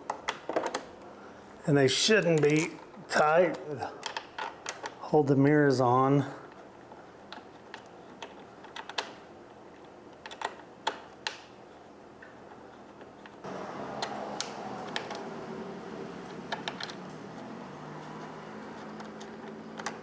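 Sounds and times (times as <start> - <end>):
hex key and metal parts clicking: 2.1 - 3.3, 13.6 - 15.4, 18.0 - 20.0.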